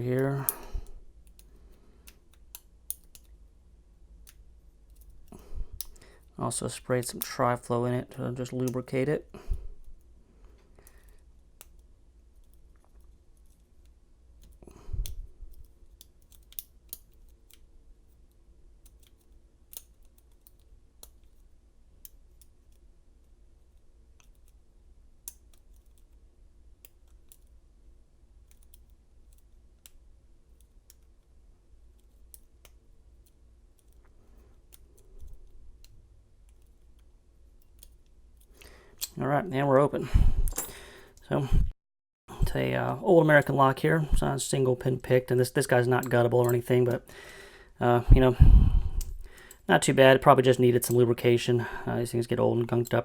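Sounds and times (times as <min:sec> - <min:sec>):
faint steady hum: 0:00.0 - 0:41.7, 0:42.3 - 0:53.0.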